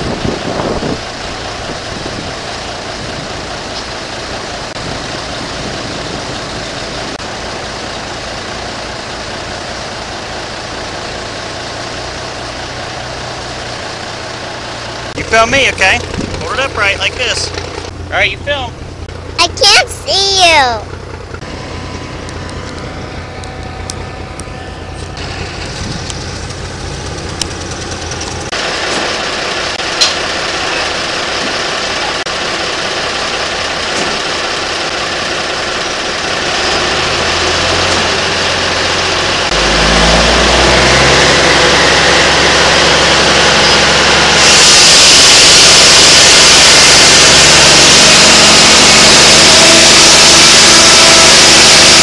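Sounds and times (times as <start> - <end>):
sawmill machinery running: 0.0 - 52.0.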